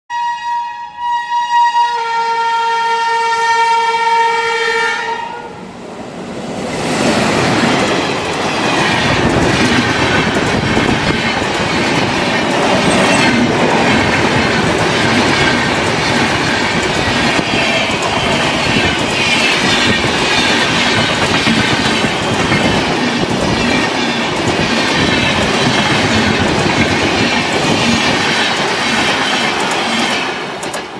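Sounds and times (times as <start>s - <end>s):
train air horn: 0.1s - 5.7s
train passing at speed: 3.6s - 30.9s.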